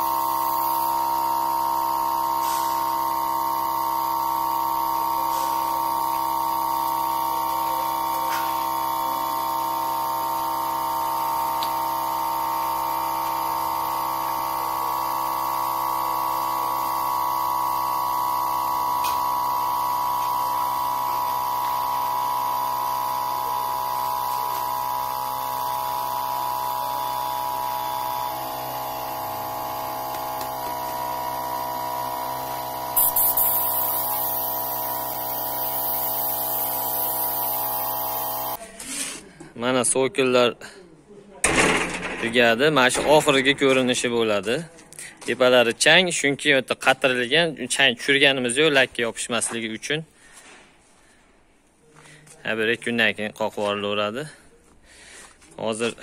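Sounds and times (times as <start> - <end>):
electric sprayer humming: 0.0 - 38.6.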